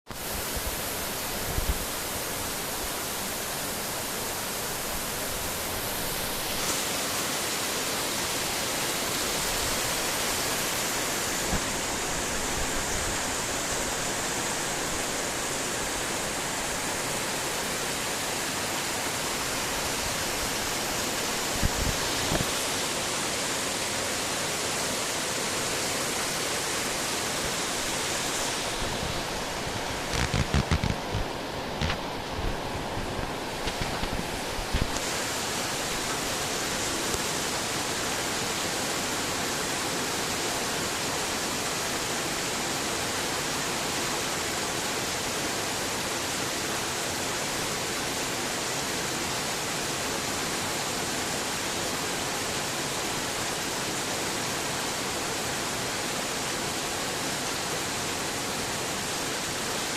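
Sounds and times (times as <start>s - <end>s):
heavy rain falling: 0.1s - 59.9s.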